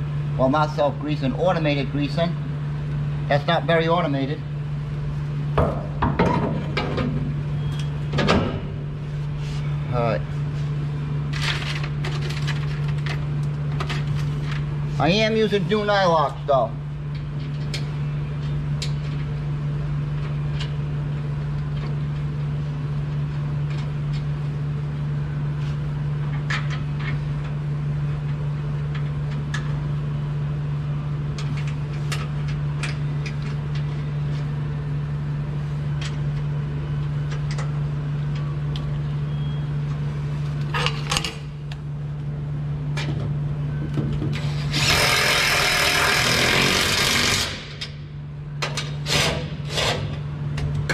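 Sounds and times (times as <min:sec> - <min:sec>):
low engine-like hum: 0:00.0 - 0:44.7
power tool starting up: 0:44.6 - 0:47.6.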